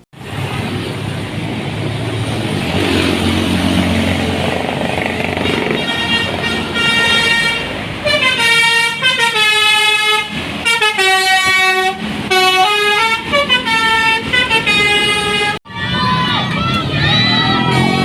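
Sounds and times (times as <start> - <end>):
bus multi-tone horn jingle: 5.3 - 15.7.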